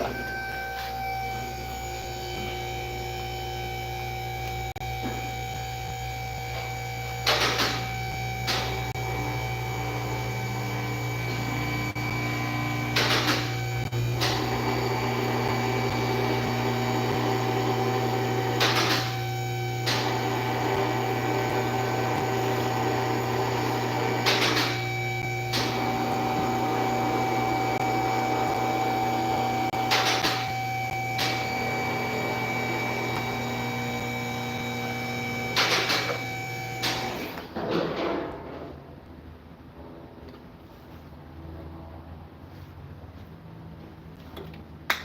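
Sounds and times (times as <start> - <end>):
machine hum: 0.0 - 37.6.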